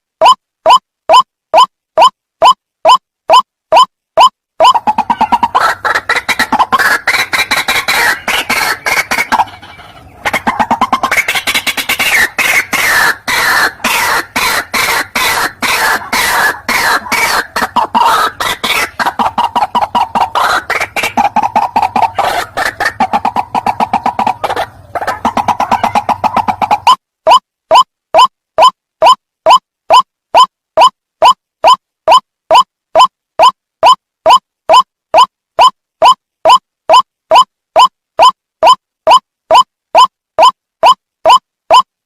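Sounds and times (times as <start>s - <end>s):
waterhen harsh croaking call: 4.6s - 27.4s.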